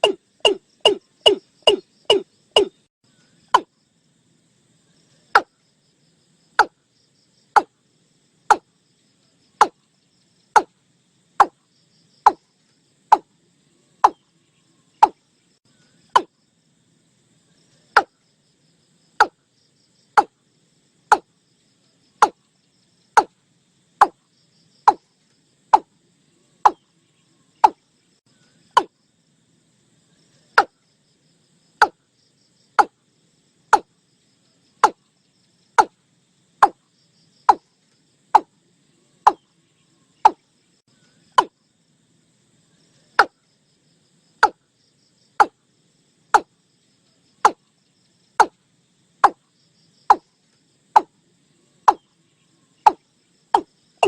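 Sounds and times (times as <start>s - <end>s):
bird calling sharp notes: 0.0s - 2.8s.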